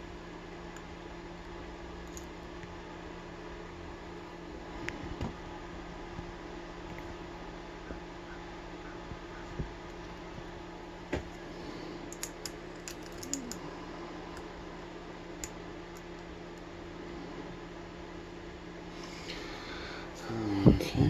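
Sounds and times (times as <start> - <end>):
low hum: 0.0 - 21.0
lock-picking tools clicking: 12.1 - 13.6.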